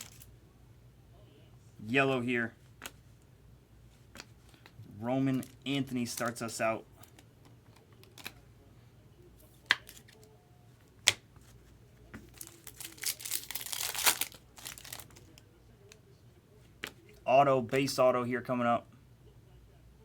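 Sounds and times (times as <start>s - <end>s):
foil wrapper crinkling and tearing: 0.0s - 0.3s, 12.3s - 15.4s.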